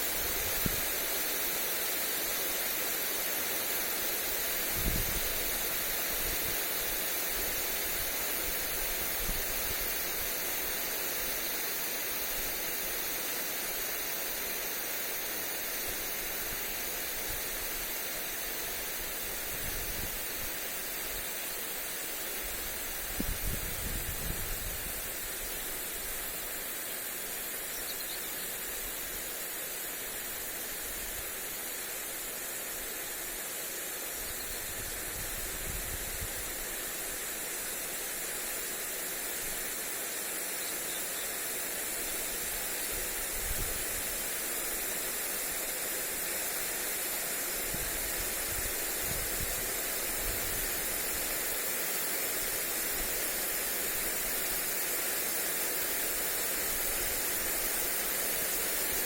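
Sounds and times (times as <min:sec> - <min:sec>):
sprinkler spraying water hiss: 0:00.0 - 0:59.0
wind rumble on microphone: 0:04.7 - 0:05.4, 0:23.1 - 0:25.0.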